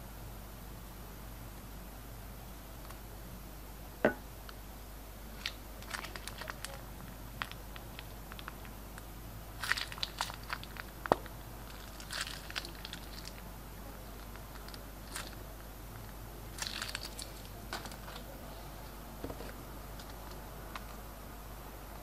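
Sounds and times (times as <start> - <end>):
sharp knocks: 4.0 - 4.2.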